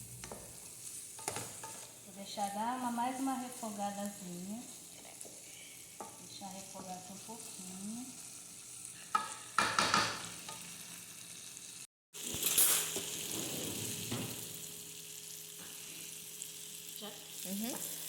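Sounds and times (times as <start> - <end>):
shrimp sizzling in a pan: 0.0 - 18.0
spoon stirring and scraping: 0.2 - 2.0.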